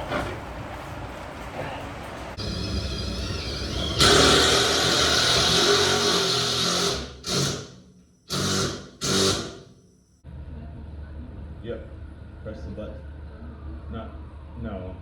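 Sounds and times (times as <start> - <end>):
hydraulic pump motor hum: 2.4 - 9.7.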